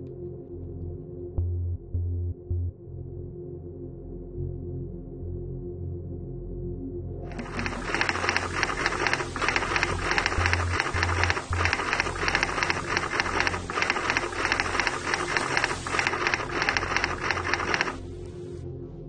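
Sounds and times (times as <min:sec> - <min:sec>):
rhythmic high-pitched pulsing music: 0:07.3 - 0:18.5.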